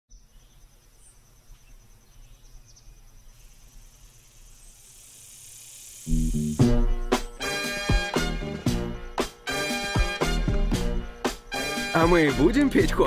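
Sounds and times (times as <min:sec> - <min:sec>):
insects chirring: 0:00.1 - 0:08.1, 0:09.0 - 0:12.7
hiss: 0:03.4 - 0:07.9
loud music with a beat: 0:06.6 - 0:13.0.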